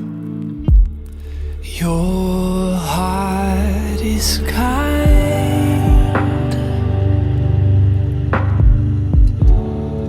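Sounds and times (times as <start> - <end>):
deep bass notes: 0.0 - 10.0
slow song with sustained chords: 0.0 - 10.0.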